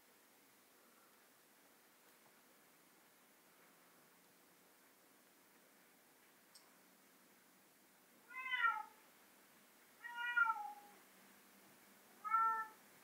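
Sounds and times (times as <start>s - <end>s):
cat meowing: 8.3s - 9.0s, 10.0s - 11.0s, 12.2s - 12.8s.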